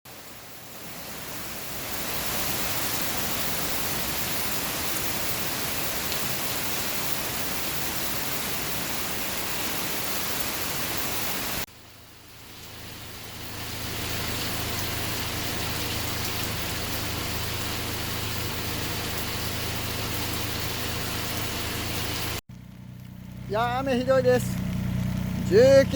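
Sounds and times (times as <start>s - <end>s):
heavy rain pouring: 0.1s - 25.9s
low engine hum: 11.7s - 25.9s.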